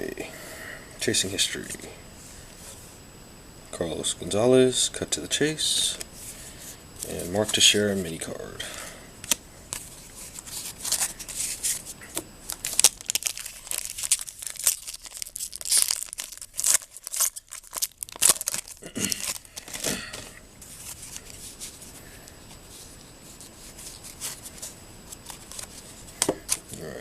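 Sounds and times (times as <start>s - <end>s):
wrapper tearing and crinkling: 9.2s - 21.7s, 23.7s - 25.9s.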